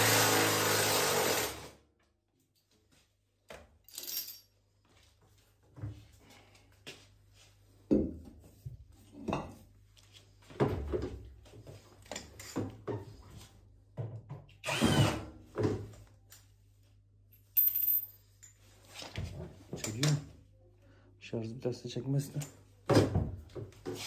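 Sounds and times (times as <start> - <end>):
cordless drill bursts: 0.0 - 1.7, 14.6 - 15.2.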